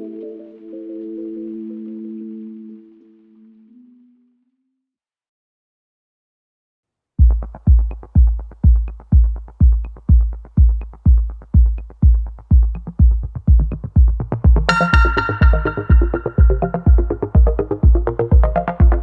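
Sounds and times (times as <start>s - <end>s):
kick drum beat: 7.2s - 19.0s
synthesizer layer: 14.6s - 19.0s.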